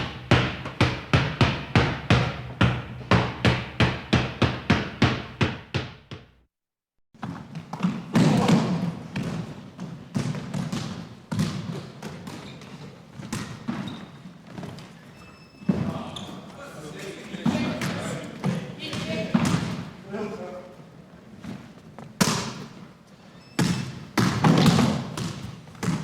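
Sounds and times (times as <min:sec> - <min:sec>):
ball thuds: 0:00.0 - 0:06.4
basketball bouncing: 0:00.0 - 0:06.4, 0:07.8 - 0:12.6, 0:18.8 - 0:19.9, 0:23.6 - 0:26.0.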